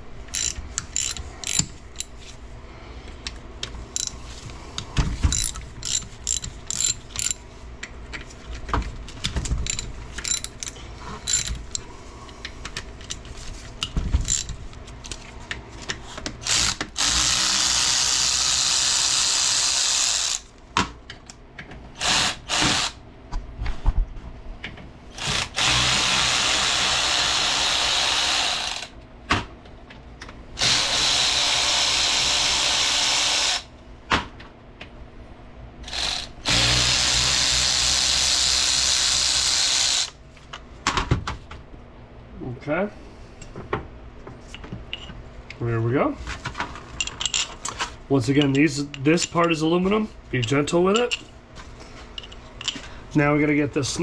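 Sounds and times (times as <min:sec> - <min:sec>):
hand ratchet clicking: 0:00.3 - 0:02.1, 0:04.0 - 0:04.2, 0:05.3 - 0:07.4, 0:09.6 - 0:11.8, 0:14.3 - 0:14.5
power tool running: 0:16.4 - 0:20.5, 0:22.0 - 0:23.0, 0:25.2 - 0:28.9, 0:30.6 - 0:33.7, 0:35.8 - 0:40.2.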